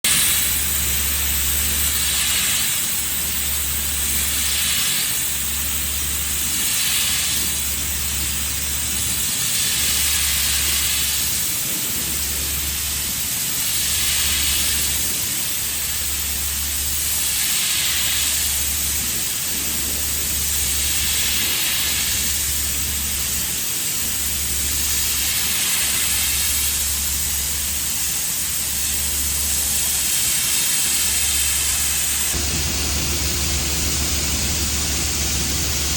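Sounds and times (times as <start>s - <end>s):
pressure washer spray hissing: 0.1s - 35.9s
low hum: 31.2s - 35.9s.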